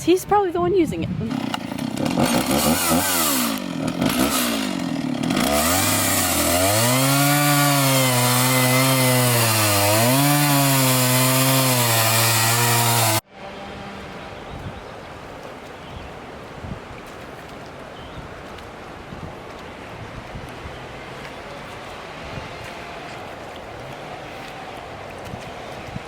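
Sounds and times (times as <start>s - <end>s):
chainsaw running at high revs: 1.2s - 13.2s.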